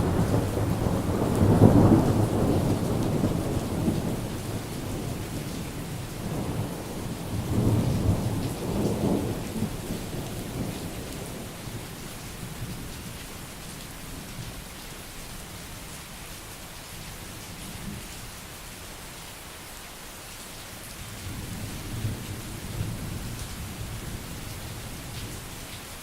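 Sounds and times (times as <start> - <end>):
rolling thunder: 0.0 - 12.0
steady rain: 0.0 - 26.0.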